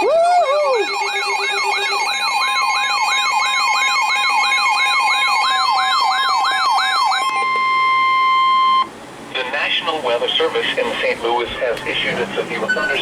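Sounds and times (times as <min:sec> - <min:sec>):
electronic siren sweeping: 0:00.0 - 0:08.9
pulsing beeps: 0:00.6 - 0:08.9, 0:12.6 - 0:13.0
steady alert tone: 0:00.8 - 0:05.9.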